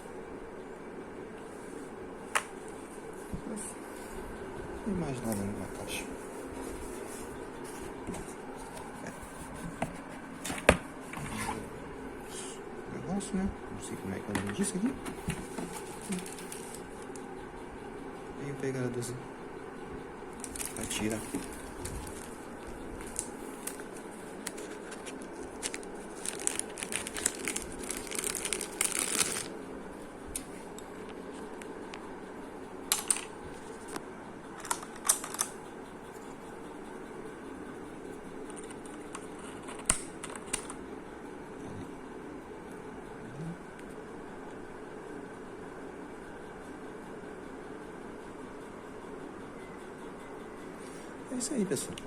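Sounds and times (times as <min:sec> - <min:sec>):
packaging rustling: 0:15.1 - 0:17.1, 0:20.4 - 0:29.6.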